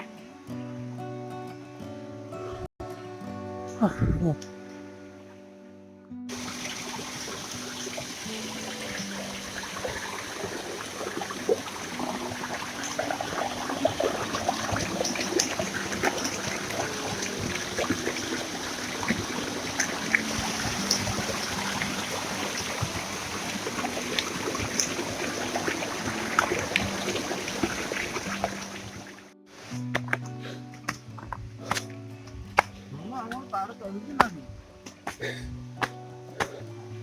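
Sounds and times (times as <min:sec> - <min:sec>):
faint background music: 0:00.0 - 0:37.0
stream splashing over rocks: 0:06.3 - 0:31.9.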